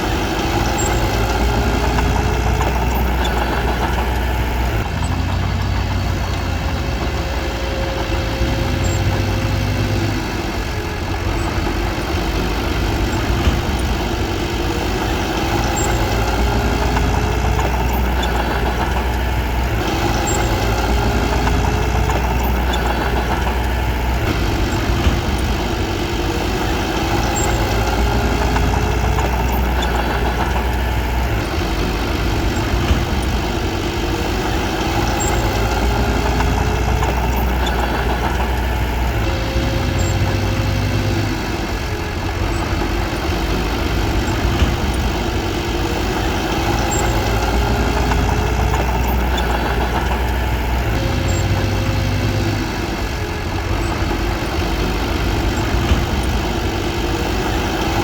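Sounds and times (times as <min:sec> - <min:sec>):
bulldozer diesel engine drone: 0:00.0 - 0:58.0.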